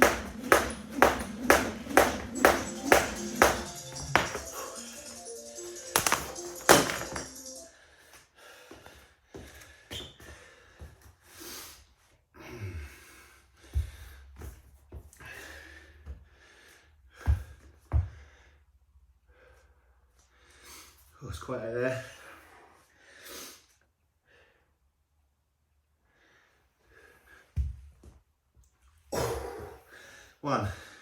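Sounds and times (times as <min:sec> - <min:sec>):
man breathing hard: 0:07.8 - 0:14.4, 0:15.2 - 0:21.0, 0:29.1 - 0:31.0.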